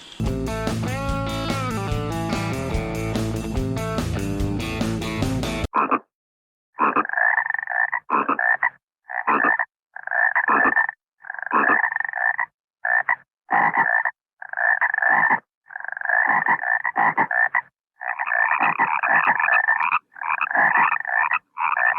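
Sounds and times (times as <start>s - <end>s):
frogs croaking: 6.8s - 21.9s.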